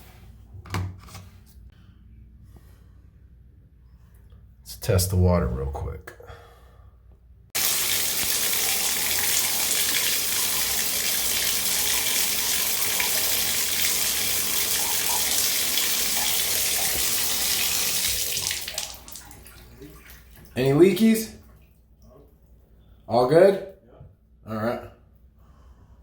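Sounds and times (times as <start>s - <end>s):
faucet running into bathtub: 7.6s - 20.8s.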